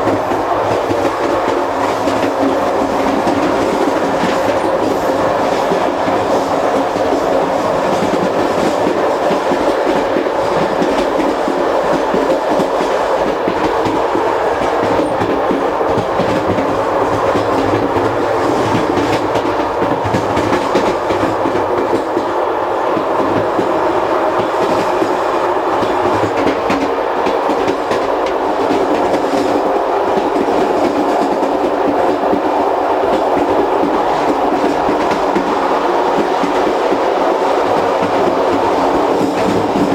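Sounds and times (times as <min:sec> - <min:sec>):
train rail rumble: 0:00.0 - 0:39.9.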